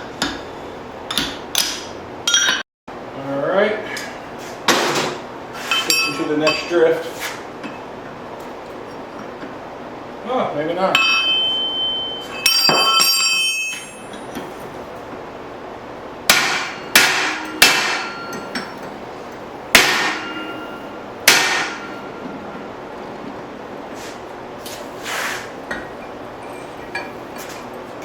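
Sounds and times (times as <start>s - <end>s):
hammer striking steel on anvil: 5.7s - 6.8s, 10.9s - 14.6s, 16.3s - 22.4s.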